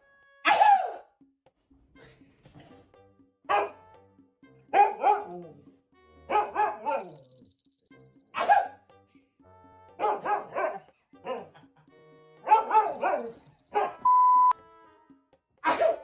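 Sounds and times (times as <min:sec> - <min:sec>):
dog barking: 0:00.4 - 0:01.1, 0:03.5 - 0:03.8, 0:04.7 - 0:05.6, 0:06.3 - 0:07.2, 0:08.4 - 0:08.8, 0:10.0 - 0:11.7, 0:12.4 - 0:14.1, 0:15.6 - 0:16.0.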